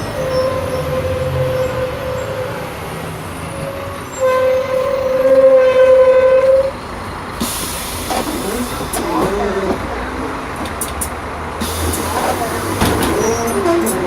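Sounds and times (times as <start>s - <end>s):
compressed air hiss: 7.4s - 9.0s, 11.6s - 13.2s.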